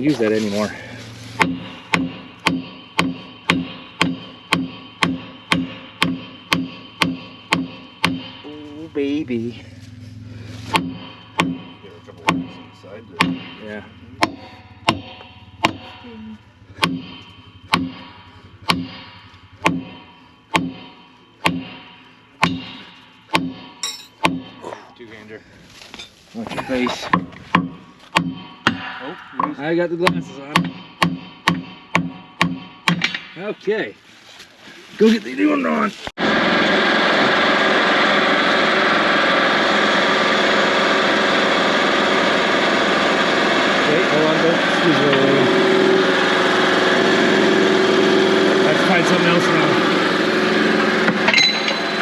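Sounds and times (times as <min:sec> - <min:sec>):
hammer striking steel: 0:00.0 - 0:09.6, 0:10.6 - 0:24.8, 0:27.0 - 0:33.7, 0:37.6 - 0:52.0
farm machine engine running: 0:00.0 - 0:33.9, 0:35.0 - 0:52.0.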